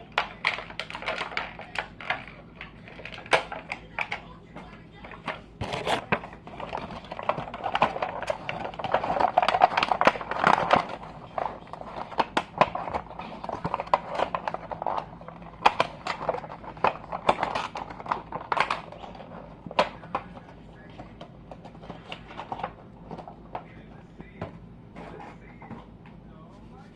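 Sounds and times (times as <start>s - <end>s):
plastic toys clicking and tapping: 0.0s - 25.8s
plastic packaging crinkling: 5.0s - 24.4s.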